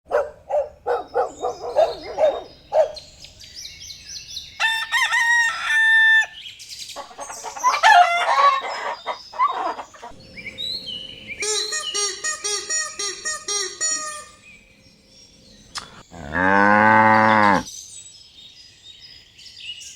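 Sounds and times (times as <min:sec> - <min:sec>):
rooster crowing: 0:04.6 - 0:06.4, 0:07.6 - 0:10.2
chicken squawks: 0:07.0 - 0:10.2
chicken clucking: 0:07.0 - 0:10.4.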